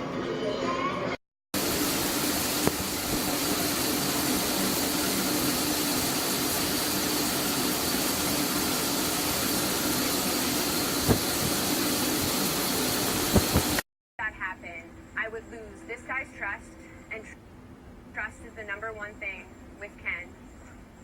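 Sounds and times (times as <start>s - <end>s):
machine hiss and hum: 1.6s - 13.8s.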